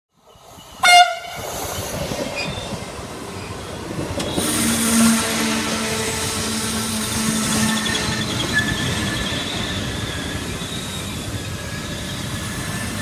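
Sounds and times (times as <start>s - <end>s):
train rolling rumble: 0.2s - 13.0s
train horn blast: 0.8s - 1.4s, 4.4s - 8.3s.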